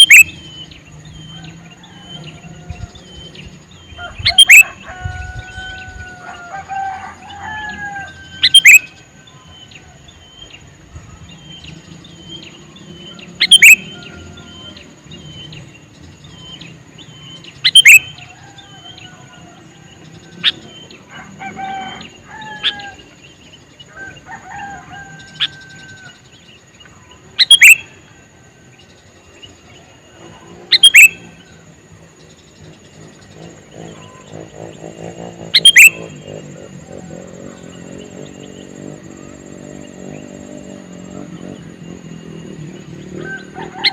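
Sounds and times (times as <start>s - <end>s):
bird calling sharply: 0.0s - 0.3s, 17.7s - 18.1s, 27.4s - 27.8s, 30.7s - 31.2s
soft bird chirps and whistles: 0.0s - 1.5s, 11.4s - 18.3s, 27.4s - 27.9s, 30.7s - 31.2s, 35.6s - 36.3s.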